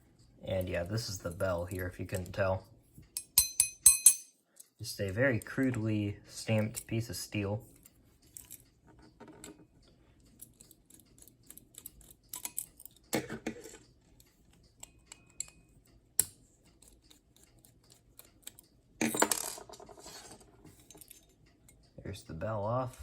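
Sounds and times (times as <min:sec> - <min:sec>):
small metal clicks and scrapes: 0:04.5 - 0:18.8, 0:19.8 - 0:22.0.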